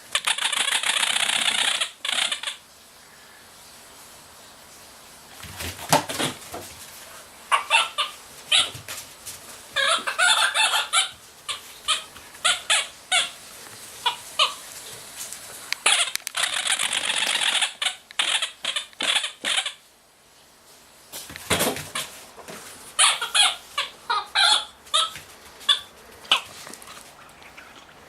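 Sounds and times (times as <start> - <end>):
squeaky dog toy squeaking: 0.1 - 2.6, 7.5 - 8.7, 9.8 - 13.4, 15.8 - 19.8, 23.0 - 26.4.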